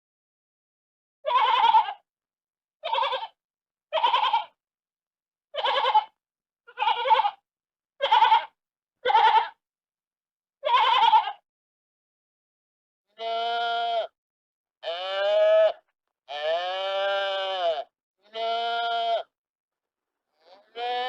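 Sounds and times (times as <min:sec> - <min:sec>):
sheep bleating: 0:01.2 - 0:02.0, 0:02.8 - 0:04.6, 0:05.5 - 0:07.4, 0:08.0 - 0:09.6, 0:10.6 - 0:11.4, 0:13.1 - 0:14.2, 0:14.8 - 0:19.4, 0:20.3 - 0:21.0.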